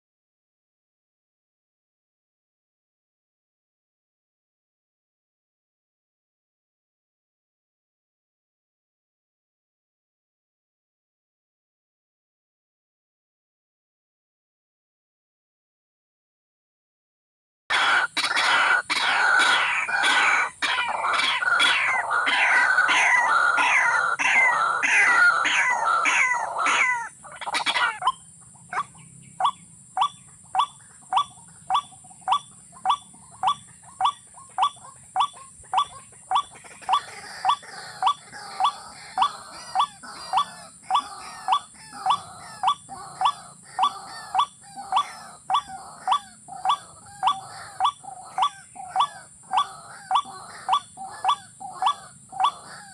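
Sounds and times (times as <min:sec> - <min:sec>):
rail bird calls: 0:17.7 - 0:52.9.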